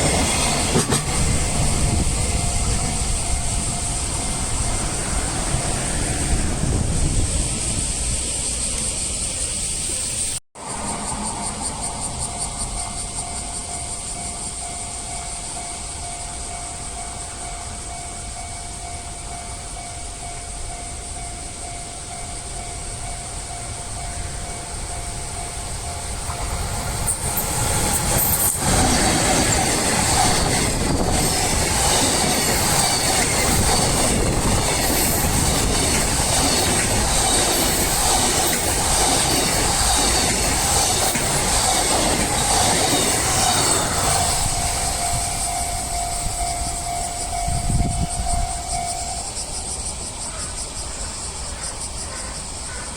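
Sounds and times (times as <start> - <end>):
level crossing warning bell: 0.0 - 6.4, 12.1 - 50.0
freight train rolling past: 0.0 - 52.9.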